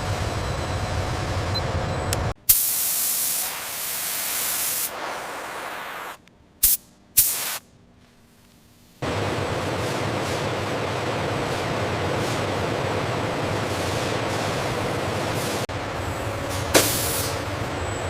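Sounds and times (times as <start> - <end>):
pressurised spray hiss: 2.5 - 7.6.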